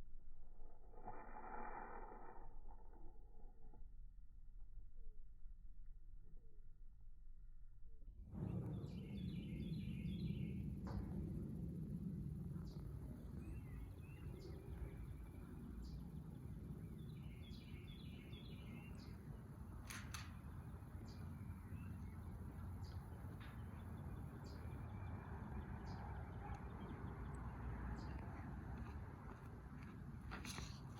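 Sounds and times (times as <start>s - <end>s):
low rumble: 0.0s - 30.9s
bird chirping: 8.4s - 11.0s, 12.5s - 29.4s.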